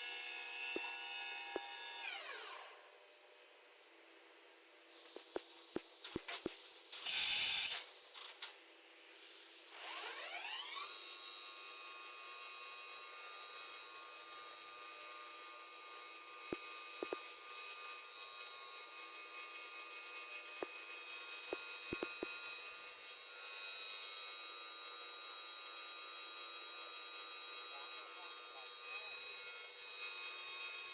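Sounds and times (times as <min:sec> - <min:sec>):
machine spindle whine: 0:05.1 - 0:08.6, 0:09.4 - 0:30.9
sharp clicks: 0:21.9 - 0:22.4.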